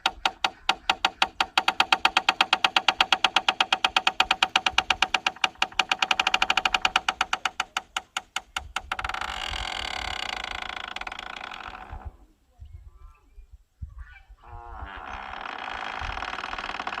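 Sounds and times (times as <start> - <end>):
gate hinge creaking: 0.0 - 12.1, 15.0 - 17.0.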